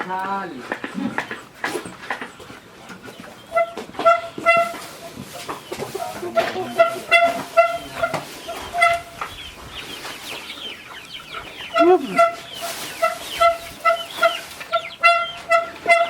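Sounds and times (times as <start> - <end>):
chickens clucking: 0.0 - 16.0.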